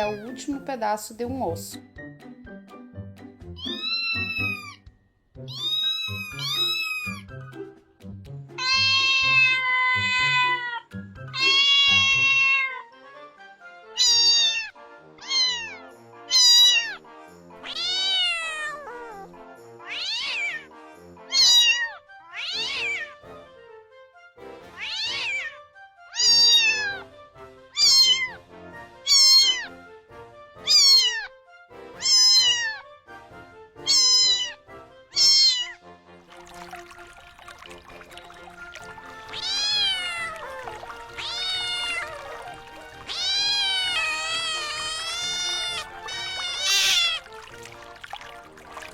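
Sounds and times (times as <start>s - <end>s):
quiet background music: 0.0s - 48.9s
kitten meowing: 3.6s - 4.8s, 5.5s - 7.2s, 8.6s - 10.8s, 11.4s - 12.9s, 14.0s - 17.0s, 17.6s - 19.2s, 19.8s - 20.6s, 21.3s - 23.1s, 24.8s - 27.0s, 27.8s - 28.4s, 29.1s - 29.7s, 30.6s - 31.3s, 32.0s - 32.8s, 33.8s - 35.8s, 39.2s - 47.4s.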